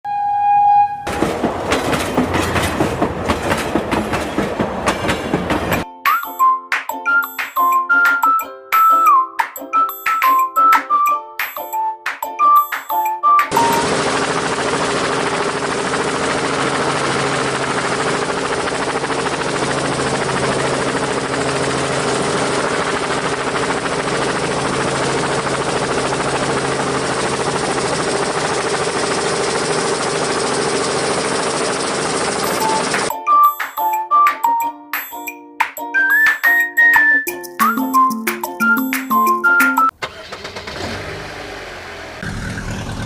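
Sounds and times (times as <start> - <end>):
toy vehicle motor whirring: 32.3 - 33.1.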